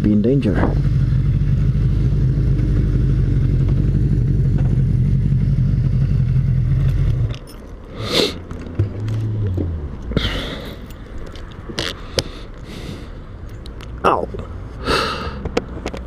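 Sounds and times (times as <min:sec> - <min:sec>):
car engine running: 0:00.0 - 0:07.5.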